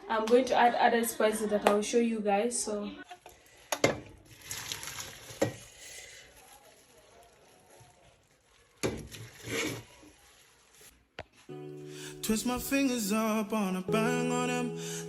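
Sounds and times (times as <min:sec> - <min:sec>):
kitchen things knocking and clattering: 0:03.7 - 0:04.2.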